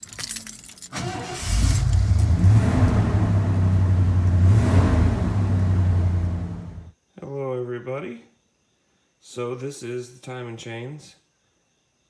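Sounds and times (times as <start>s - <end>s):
engine running with low drone: 1.0s - 6.9s.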